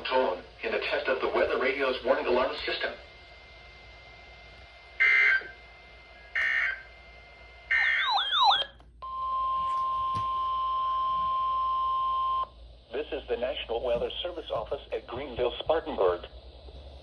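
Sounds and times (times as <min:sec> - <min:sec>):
steady warning alarm tone: 0:00.0 - 0:12.5
digital data tone bursts: 0:06.4 - 0:06.9, 0:07.7 - 0:08.6.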